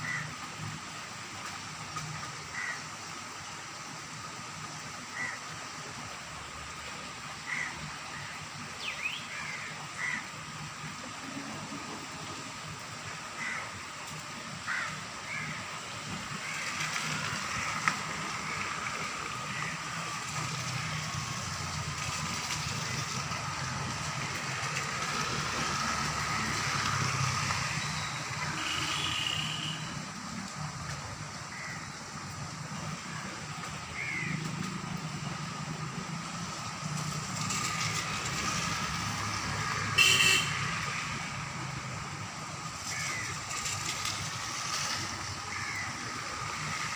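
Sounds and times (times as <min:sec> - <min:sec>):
rain hissing: 0:00.0 - 0:46.9.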